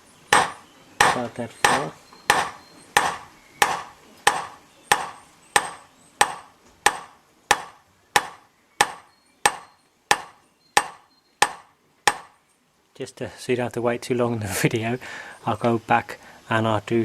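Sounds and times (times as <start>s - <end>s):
hammer striking scythe blade: 0.3s - 12.3s.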